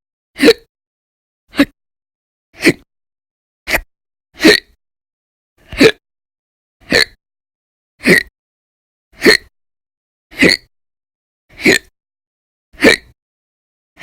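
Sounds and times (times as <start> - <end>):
person hiccuping: 0.4 - 0.7, 4.4 - 4.8, 5.7 - 6.0, 6.8 - 7.2, 8.0 - 8.3, 9.2 - 9.5, 10.3 - 10.7, 11.5 - 11.9, 12.8 - 13.2.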